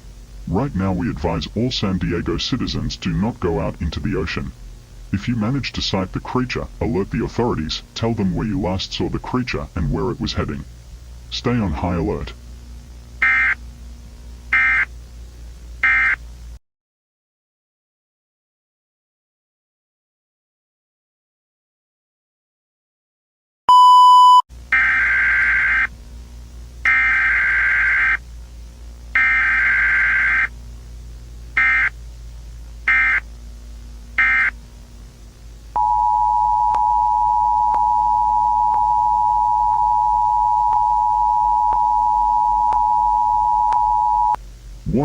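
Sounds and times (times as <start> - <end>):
short high beep: 23.7 - 24.4
screeching digital data bursts: 26.9 - 28.2, 29.2 - 30.5, 32.9 - 33.2, 34.2 - 34.5
two-tone alert signal: 35.8 - 44.4.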